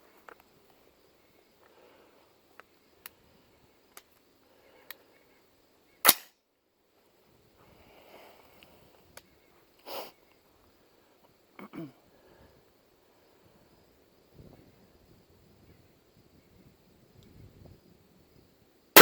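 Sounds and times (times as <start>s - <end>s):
rifle shot: 6.1s - 6.3s.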